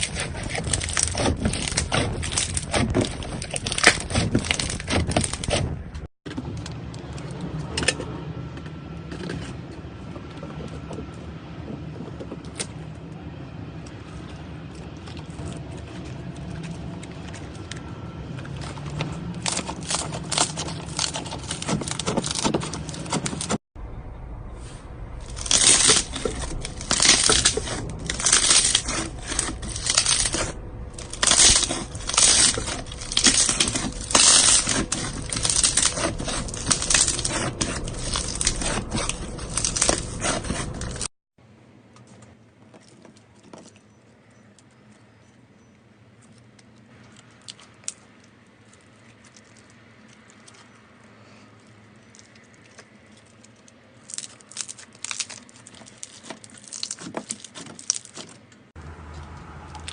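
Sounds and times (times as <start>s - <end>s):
slime crackling and popping: 0.0s - 6.0s, 19.4s - 23.6s, 25.2s - 41.1s, 52.1s - 58.4s.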